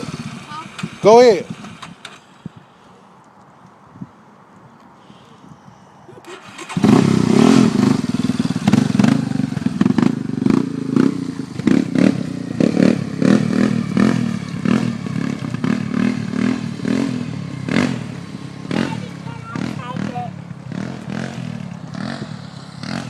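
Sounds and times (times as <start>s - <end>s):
atv engine revving: 0.0s - 2.8s, 6.2s - 23.0s.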